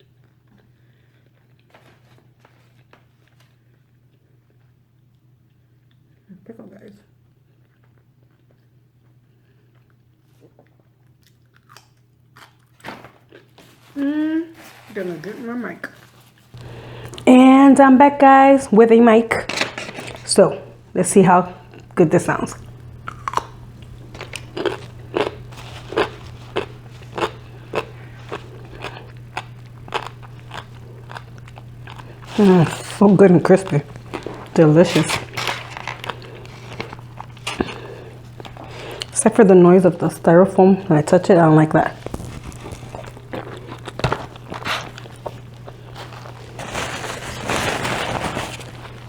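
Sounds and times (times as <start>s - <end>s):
crunchy chewing: 7.4s - 13.8s, 21.6s - 39.2s, 40.8s - 49.0s
faint low hum: 13.9s - 49.0s.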